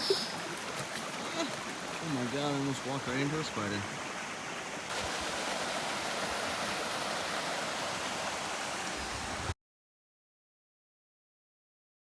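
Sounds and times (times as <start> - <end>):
flowing water rushing: 0.0 - 9.6.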